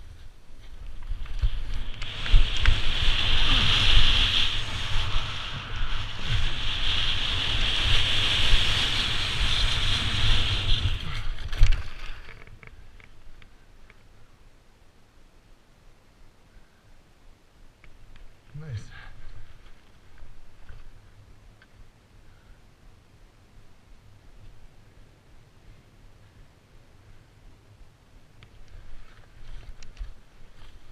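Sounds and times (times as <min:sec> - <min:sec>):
snow scraping underfoot: 0:00.0 - 0:12.4, 0:28.8 - 0:30.9.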